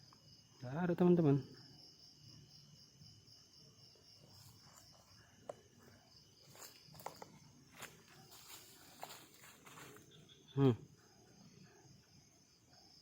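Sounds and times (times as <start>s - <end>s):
insects chirping: 0.0s - 13.0s.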